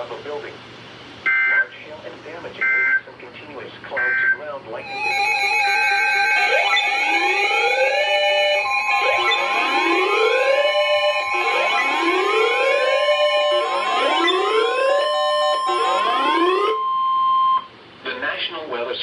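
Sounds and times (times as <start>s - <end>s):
steady electronic tones: 4.0s - 17.7s
whooping electronic alarm: 4.0s - 17.7s.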